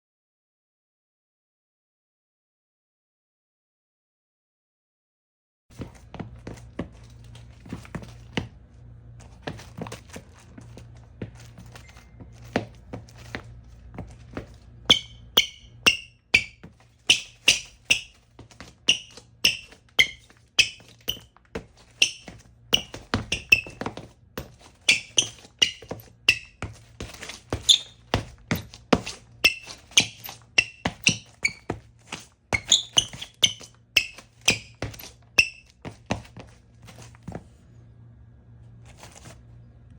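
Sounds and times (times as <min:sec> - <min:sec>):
shoes squeaking on floor: 0:05.7 - 0:37.6.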